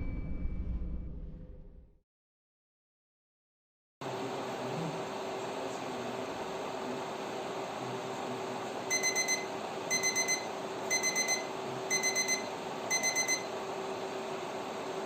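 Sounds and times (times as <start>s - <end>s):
steady hum: 4.0s - 15.0s
electronic alarm beeping: 8.9s - 13.5s.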